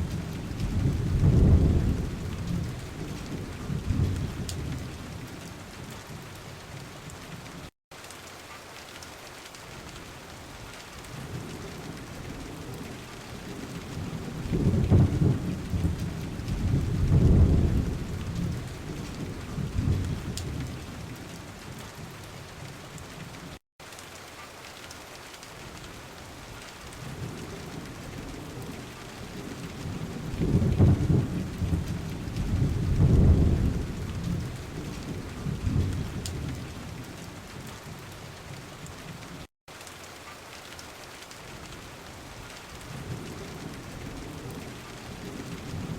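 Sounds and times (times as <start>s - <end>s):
rolling thunder rumbles: 0.0s - 7.5s, 11.1s - 23.4s, 26.9s - 39.4s, 42.8s - 45.9s
steady rain hiss: 0.0s - 45.9s.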